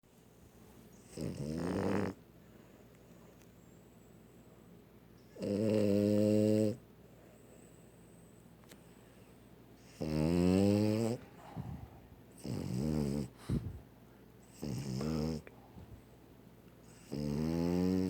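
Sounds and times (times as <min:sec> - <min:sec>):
dog snoring: 0:01.0 - 0:02.2, 0:05.4 - 0:06.8, 0:09.8 - 0:13.8, 0:14.4 - 0:15.5, 0:16.8 - 0:18.0
dog snorting: 0:01.0 - 0:02.2, 0:09.9 - 0:13.8, 0:14.5 - 0:15.5.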